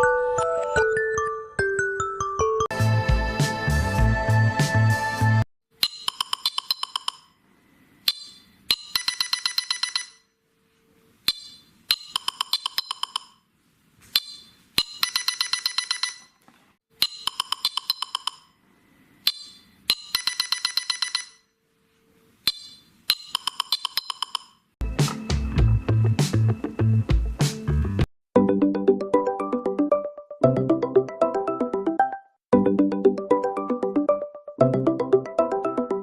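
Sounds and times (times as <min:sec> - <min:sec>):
phone ringtone: 0:05.8 - 0:07.3, 0:08.7 - 0:10.3, 0:11.9 - 0:13.3, 0:14.8 - 0:16.4, 0:17.0 - 0:18.5, 0:19.9 - 0:21.5.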